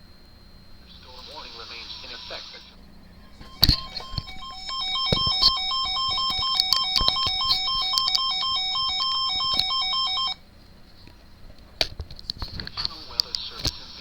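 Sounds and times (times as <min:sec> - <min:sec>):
warbling alarm tone: 0:03.0 - 0:10.4
scattered clicks: 0:03.4 - 0:10.4, 0:11.1 - 0:14.0.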